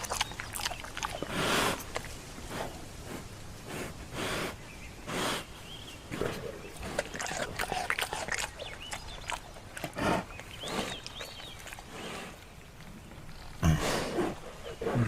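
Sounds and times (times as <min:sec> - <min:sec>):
bear clicking and snapping: 0:00.0 - 0:02.3, 0:06.1 - 0:13.4
bear huffing: 0:00.0 - 0:12.5, 0:13.6 - 0:15.0.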